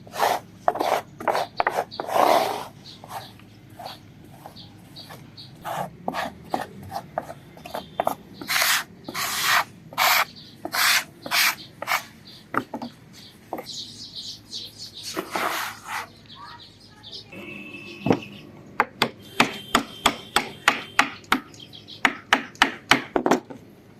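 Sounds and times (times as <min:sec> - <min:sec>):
hand tool scraping wood: 0:00.0 - 0:12.9, 0:15.1 - 0:16.2.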